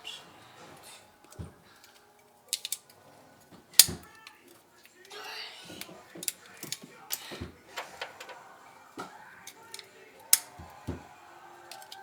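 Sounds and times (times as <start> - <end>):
clicks and knocks of hand work: 1.2 - 5.1, 5.7 - 11.1, 11.7 - 12.0.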